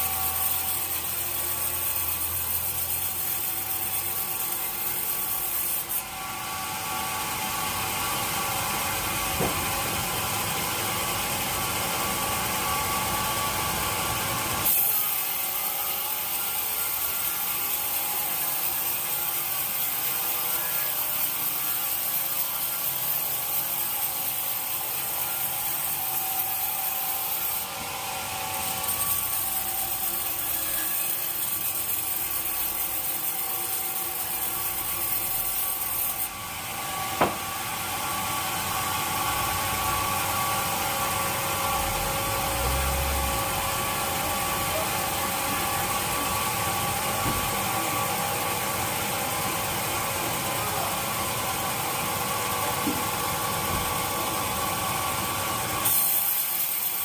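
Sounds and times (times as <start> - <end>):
saw whining through wood: 0.0 - 57.0
sharp knock: 9.4 - 9.7, 37.2 - 37.5.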